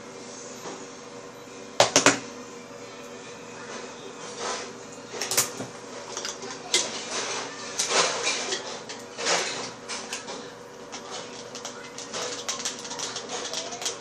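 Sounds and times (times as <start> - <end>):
sharp clicks of objects handled: 10.9 - 14.0.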